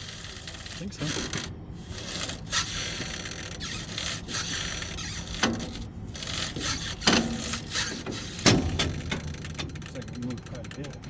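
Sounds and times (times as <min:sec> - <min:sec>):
sharp metal knocks: 0:06.6 - 0:10.9.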